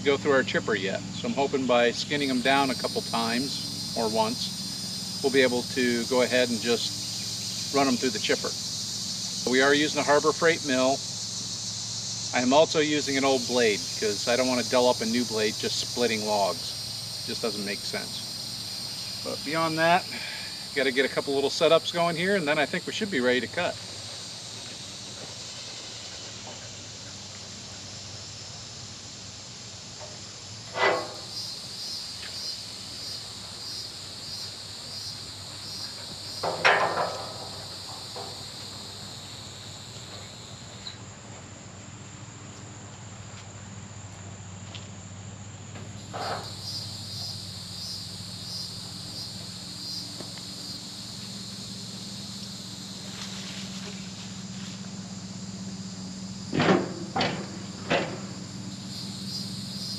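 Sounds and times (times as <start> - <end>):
insects chirring: 0.0 - 59.9.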